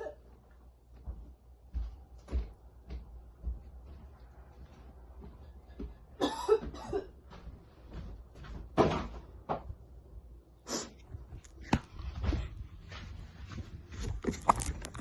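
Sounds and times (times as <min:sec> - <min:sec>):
person coughing hard: 0:06.2 - 0:07.2.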